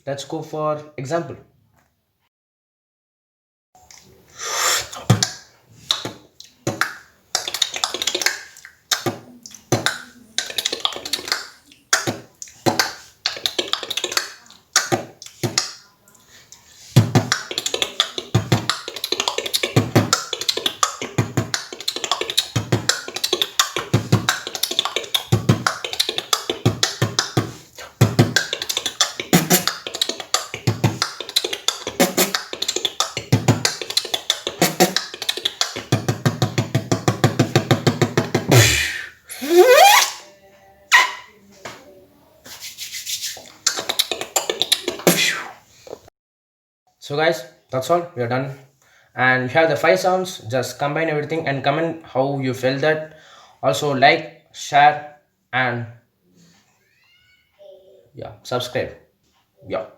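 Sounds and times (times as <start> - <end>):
beatboxing: 4.4 - 15.8, 16.8 - 40.2, 43.0 - 45.6.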